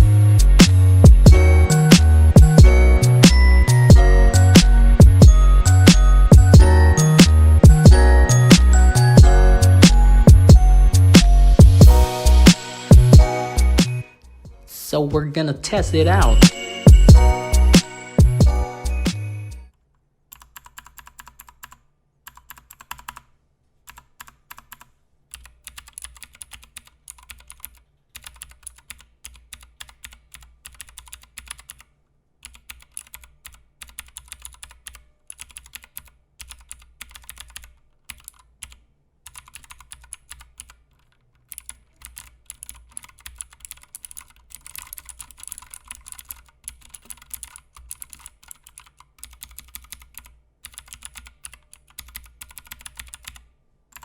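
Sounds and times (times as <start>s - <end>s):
clicky mechanical keyboard typing: 20.3s - 23.3s, 23.9s - 54.0s.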